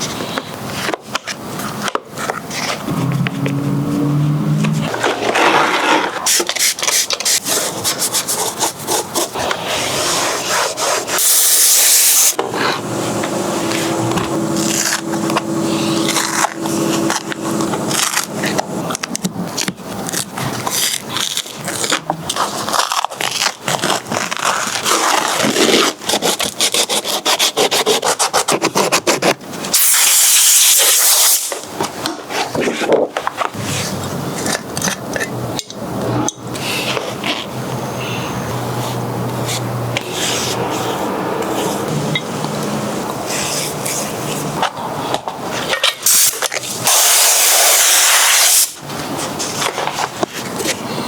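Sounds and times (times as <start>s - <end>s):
scraping and rubbing on car trim: 0.2s - 29.4s, 38.8s - 42.0s, 43.2s - 50.8s
steady hum: 2.7s - 5.0s, 9.4s - 19.4s.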